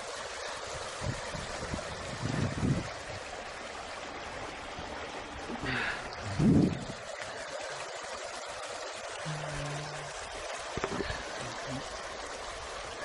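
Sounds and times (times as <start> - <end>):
stream flowing: 0.0 - 13.0.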